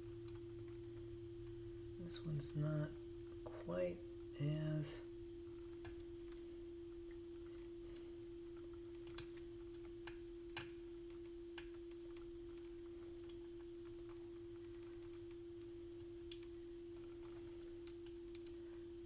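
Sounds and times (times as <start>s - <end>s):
small clicks on circuit board: 9.0s - 14.1s.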